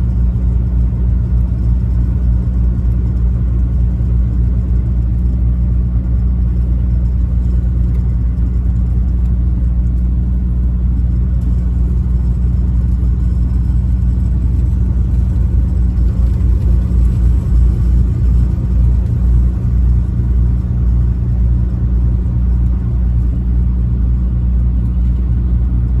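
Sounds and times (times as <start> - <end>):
truck engine drone: 0.0 - 26.0
road noise: 12.3 - 26.0.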